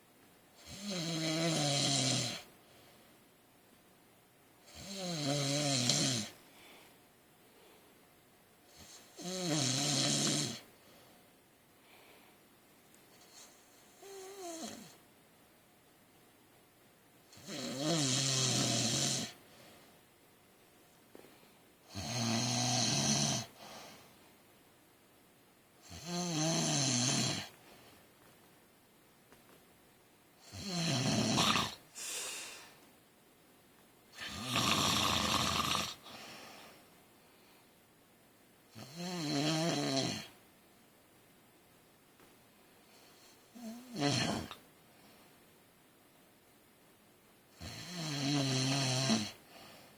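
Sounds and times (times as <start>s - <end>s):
man snoring: 0.6s - 2.5s, 4.7s - 6.4s, 8.8s - 10.6s, 17.4s - 19.4s, 21.9s - 23.6s, 25.8s - 27.5s, 30.4s - 32.5s, 34.2s - 36.1s, 38.8s - 40.3s, 43.6s - 44.6s, 47.6s - 49.4s
soft breath out: 31.9s - 32.9s.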